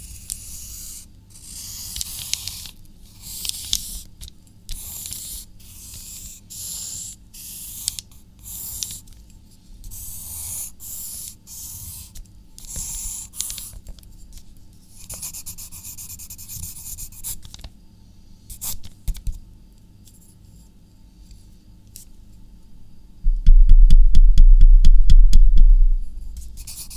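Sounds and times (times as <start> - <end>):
pen scratching on paper: 0.0 - 2.6, 26.6 - 26.9.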